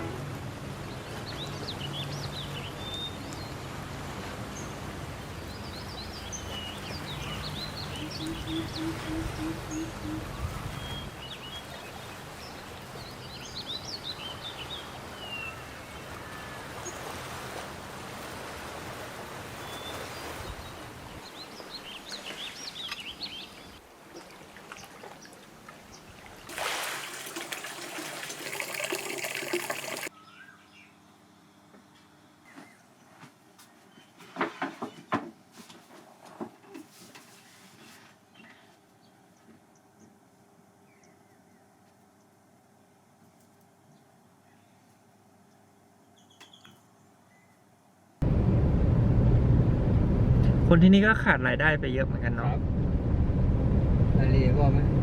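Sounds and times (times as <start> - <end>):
birds chirping: 4.6 - 16.2, 19.6 - 23.8
water trickling: 23.8 - 30.1.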